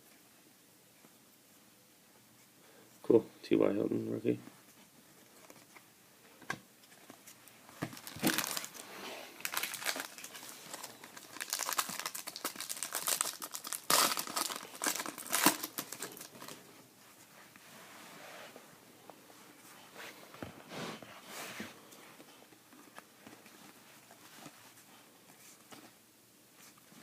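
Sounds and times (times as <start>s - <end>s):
foil wrapper crinkling and tearing: 7.8s - 8.8s, 9.4s - 16.6s.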